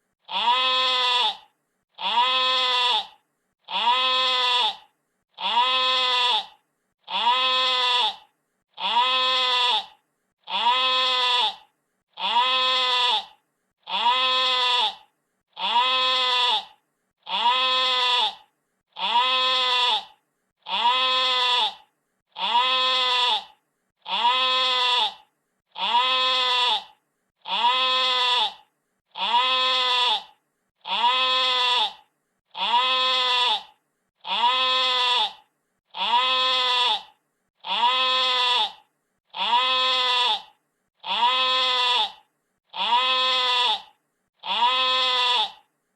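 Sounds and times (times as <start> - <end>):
sheep bleating: 0.3 - 25.2, 25.8 - 45.7.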